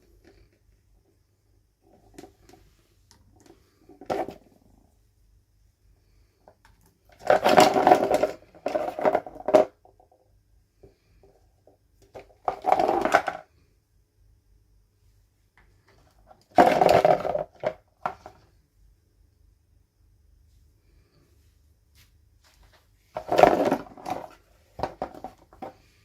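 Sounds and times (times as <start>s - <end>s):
toy packaging rustling and scraping: 1.8s - 4.7s, 7.1s - 9.8s, 12.1s - 13.5s, 15.9s - 18.5s, 22.0s - 26.0s.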